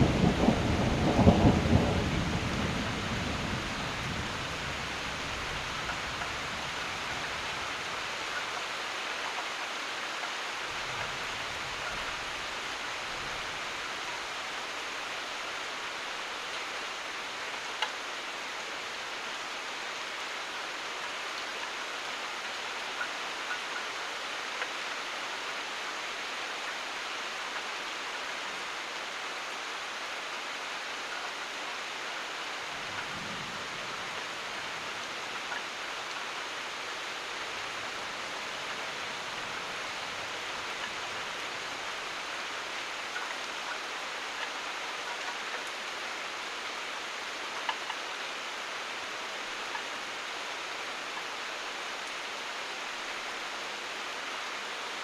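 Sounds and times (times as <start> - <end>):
thunder rumble: 0.0 - 6.2
heavy rain falling: 0.0 - 55.0.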